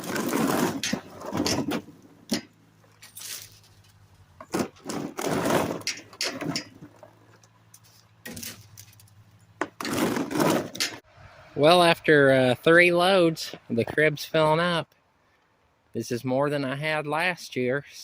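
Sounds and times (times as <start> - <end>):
corn ears clattering and thudding: 0.0 - 11.0.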